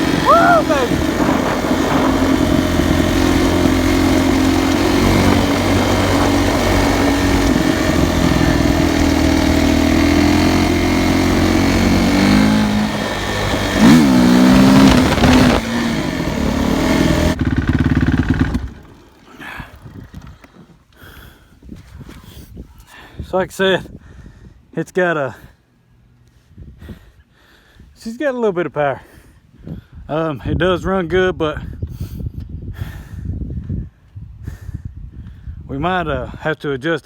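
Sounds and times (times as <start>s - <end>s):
dirt bike engine revving: 0.0s - 20.4s.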